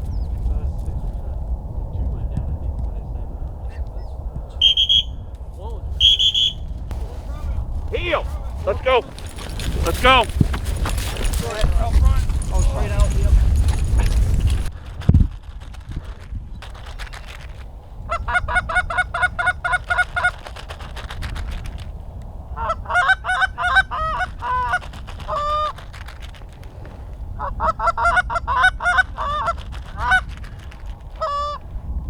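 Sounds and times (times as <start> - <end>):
low wind rumble: 0.0 - 32.0
goose honking and clucking: 18.1 - 20.4, 22.6 - 25.8, 27.4 - 30.3, 31.2 - 31.6.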